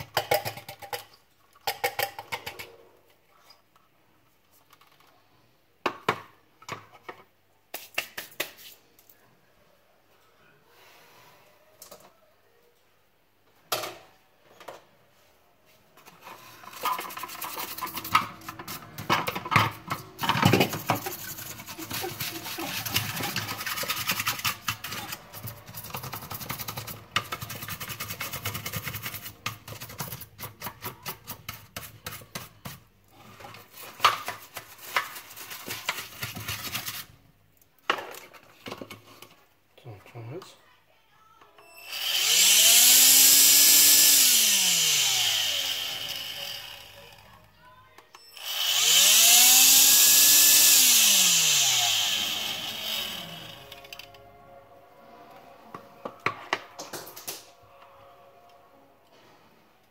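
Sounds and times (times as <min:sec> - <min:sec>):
hand scraping fan impeller: 0:16.6 - 0:29.5.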